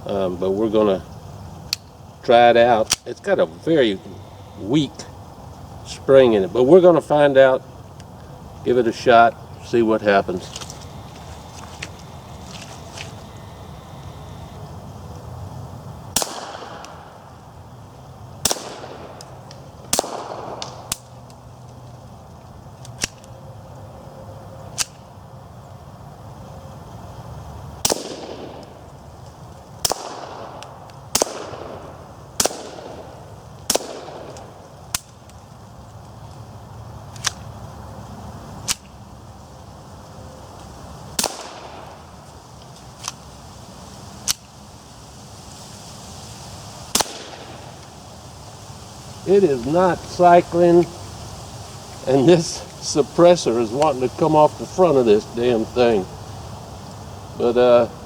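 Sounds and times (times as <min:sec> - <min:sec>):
suppressed pistol shots: 0:16.2 - 0:17.2, 0:18.4 - 0:21.1, 0:27.8 - 0:28.7, 0:29.8 - 0:33.1, 0:33.7 - 0:35.1, 0:41.2 - 0:42.0, 0:46.9 - 0:47.6.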